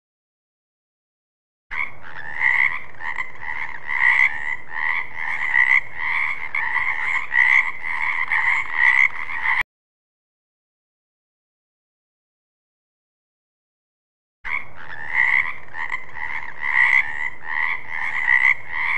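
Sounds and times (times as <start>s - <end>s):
frog croaking: 1.7s - 9.6s, 14.5s - 18.9s.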